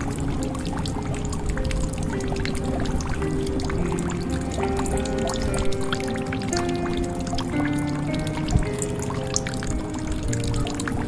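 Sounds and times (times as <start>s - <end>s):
slow calm music: 0.0s - 11.0s
water dripping and pouring: 0.0s - 11.0s.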